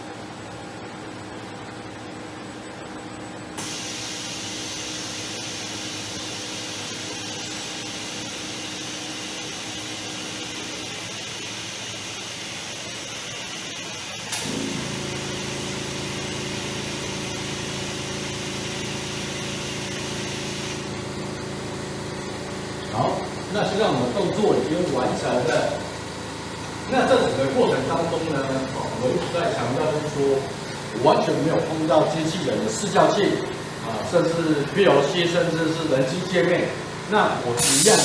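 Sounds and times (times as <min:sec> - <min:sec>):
multi-tone machine hum: 0:00.0 - 0:38.0
steady air hiss: 0:37.5 - 0:38.0.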